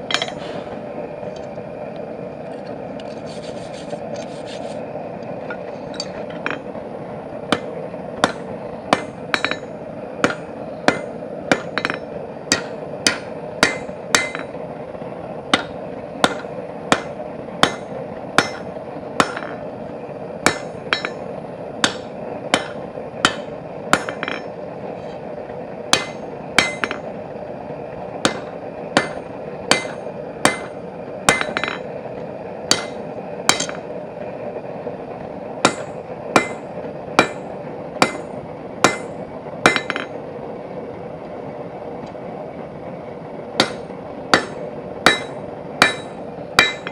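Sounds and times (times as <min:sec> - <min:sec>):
hammer striking steel on anvil: 0:00.0 - 0:00.6, 0:07.5 - 0:14.6, 0:15.5 - 0:19.6, 0:20.4 - 0:24.6, 0:25.9 - 0:27.1, 0:28.2 - 0:31.9, 0:32.7 - 0:33.9, 0:35.6 - 0:40.2, 0:43.6 - 0:46.9
steady drone: 0:00.0 - 0:46.9.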